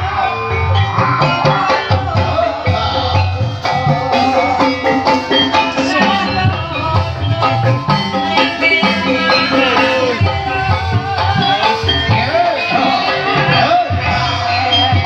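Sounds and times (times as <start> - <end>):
ringing tuned percussion: 0.0 - 15.0
steady drum strokes: 1.5 - 14.3
wavering melodic line: 2.8 - 13.6.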